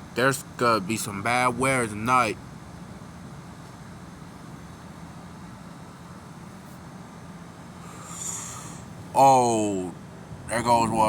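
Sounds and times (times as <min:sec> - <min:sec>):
low outdoor background hum: 0:00.0 - 0:11.0
hiss: 0:07.8 - 0:08.9.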